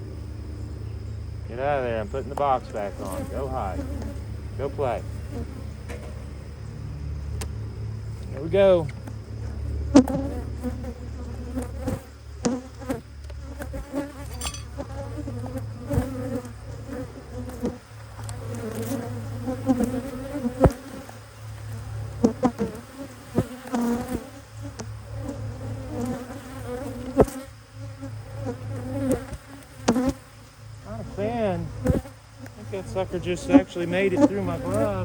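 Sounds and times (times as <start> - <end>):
honeybees buzzing: 0.0 - 35.0.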